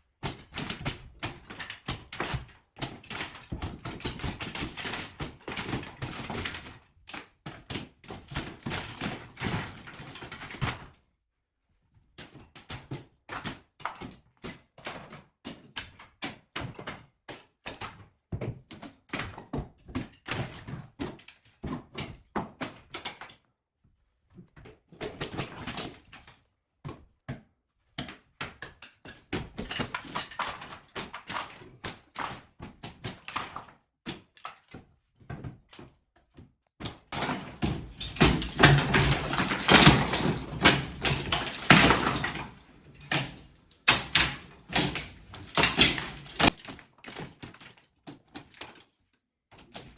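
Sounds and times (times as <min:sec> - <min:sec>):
clattering debris: 0:37.2 - 0:46.6.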